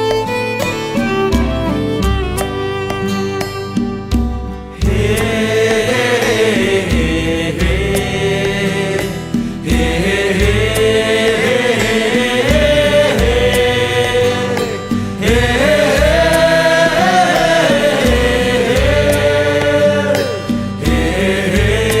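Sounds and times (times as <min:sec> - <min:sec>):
steady low beat: 0:04.4 - 0:19.8
person singing: 0:04.7 - 0:22.0.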